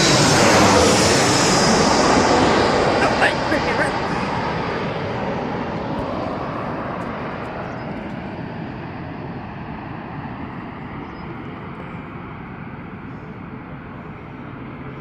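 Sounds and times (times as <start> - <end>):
jet airliner rushing noise: 0.0 - 9.3.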